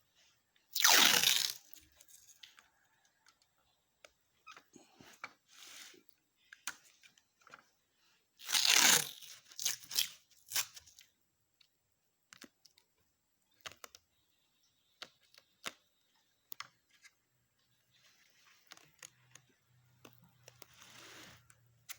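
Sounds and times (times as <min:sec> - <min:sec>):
tearing rasp: 0:08.4 - 0:10.8.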